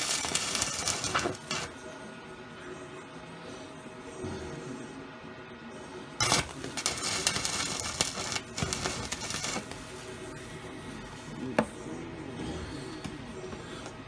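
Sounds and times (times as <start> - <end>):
welding arc crackling: 0.0 - 1.8, 6.2 - 11.4.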